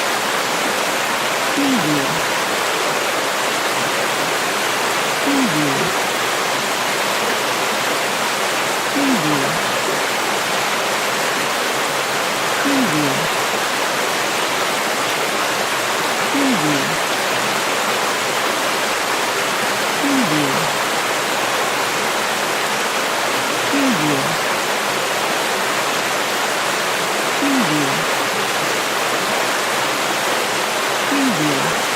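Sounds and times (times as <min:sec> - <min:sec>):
river water flowing: 0:00.0 - 0:31.9.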